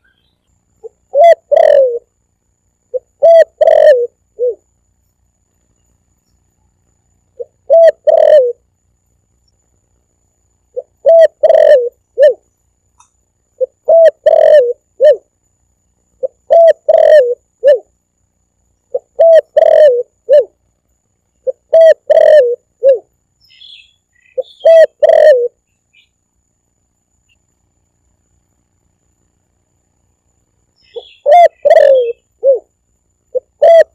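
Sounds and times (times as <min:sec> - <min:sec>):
faint high chirps: 0:00.0 - 0:26.2, 0:27.0 - 0:33.9
dove cooing: 0:00.8 - 0:02.1, 0:02.9 - 0:04.7, 0:07.4 - 0:08.6, 0:10.7 - 0:12.4, 0:13.6 - 0:15.3, 0:16.2 - 0:17.9, 0:18.9 - 0:20.6, 0:21.4 - 0:23.1, 0:24.4 - 0:25.6, 0:30.9 - 0:32.7, 0:33.3 - 0:33.9.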